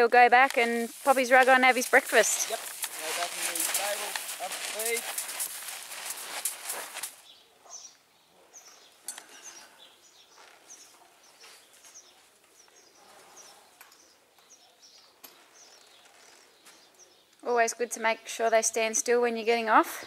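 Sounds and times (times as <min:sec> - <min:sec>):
bird chirping: 0:00.5 - 0:17.4.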